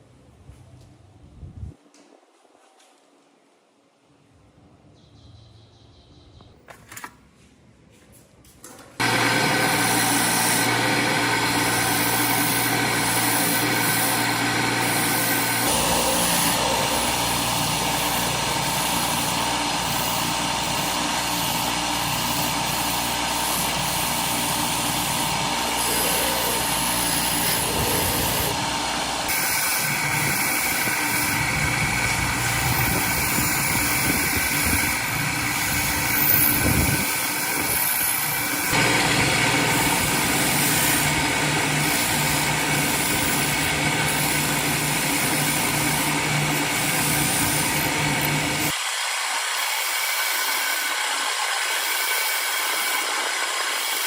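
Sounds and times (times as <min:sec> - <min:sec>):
lawn mower engine running: 0:09.0 - 0:48.8.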